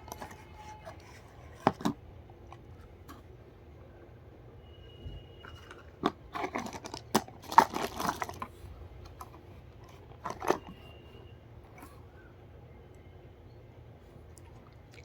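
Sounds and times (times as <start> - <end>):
packaging crinkling and tearing: 5.6 - 8.6.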